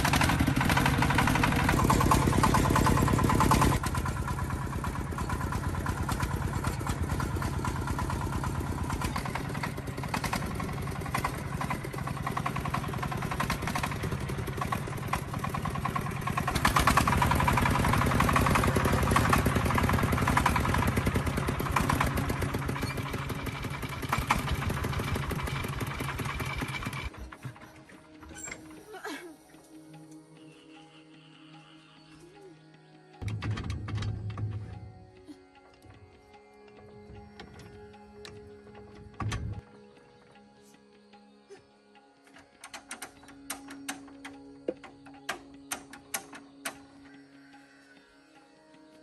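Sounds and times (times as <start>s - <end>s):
diesel engine running: 0.0s - 27.8s.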